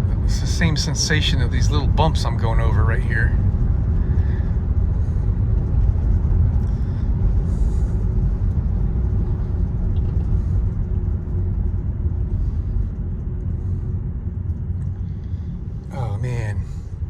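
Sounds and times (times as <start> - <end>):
car cabin road rumble: 0.0 - 17.0.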